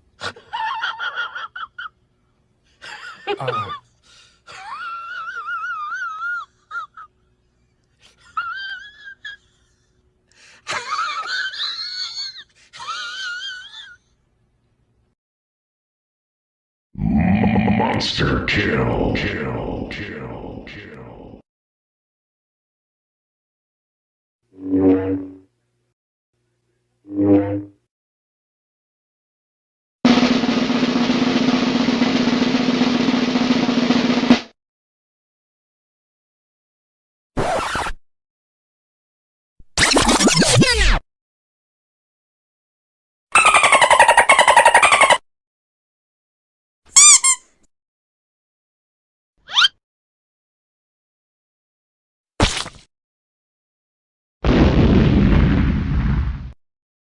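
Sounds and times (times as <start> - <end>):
wheezy cartoon laugh: 0.2 - 2.0, 2.8 - 7.2, 8.0 - 10.0, 10.6 - 14.1, 43.4 - 45.2
snare drum roll: 30.1 - 34.6.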